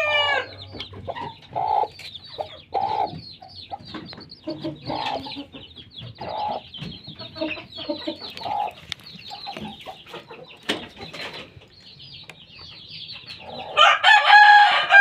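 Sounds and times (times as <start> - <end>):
rooster crowing: 0.0 - 0.6, 13.8 - 15.0
chickens clucking: 0.0 - 15.0.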